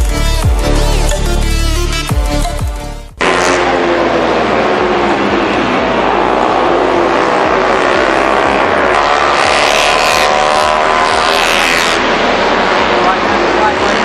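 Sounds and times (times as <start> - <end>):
racing motorcycles accelerating past: 3.2 - 14.0.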